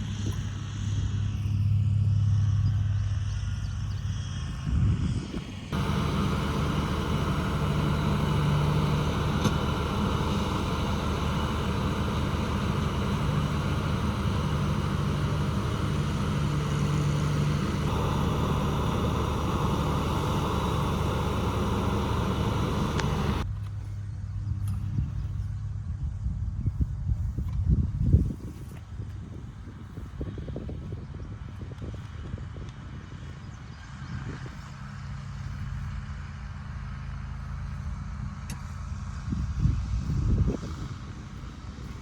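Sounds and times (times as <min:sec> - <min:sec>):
vehicle engine running: 0:05.7 - 0:25.7.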